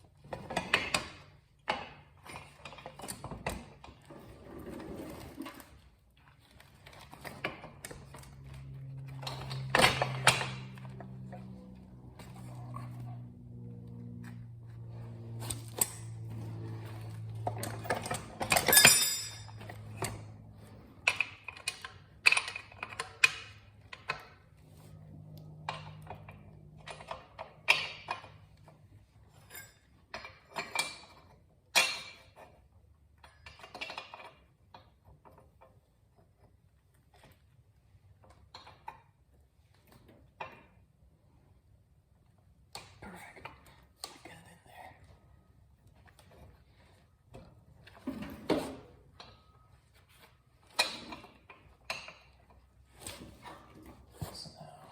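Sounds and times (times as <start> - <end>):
metal parts knocking and clinking: 17.4 - 19.7.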